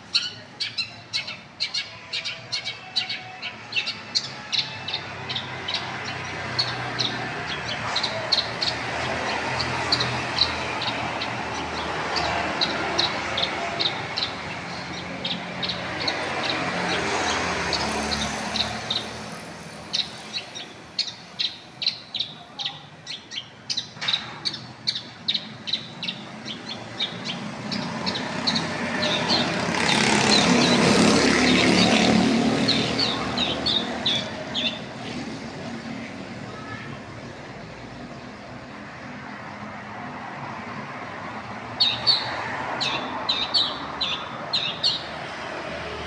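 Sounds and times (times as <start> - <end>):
shrike chattering song: 0.0 - 19.3
vehicle noise: 0.0 - 46.0.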